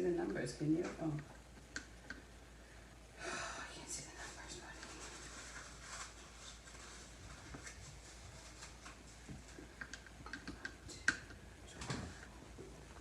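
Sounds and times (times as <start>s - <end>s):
light clicks and taps: 8.8s - 12.7s.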